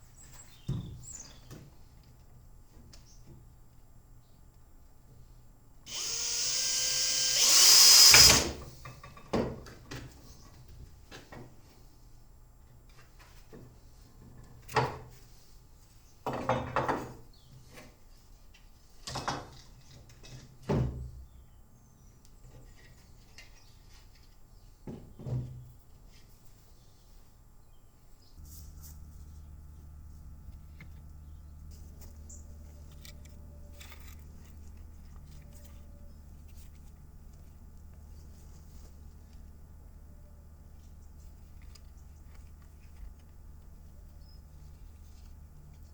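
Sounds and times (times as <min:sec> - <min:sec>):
power drill running: 0:05.9 - 0:08.6.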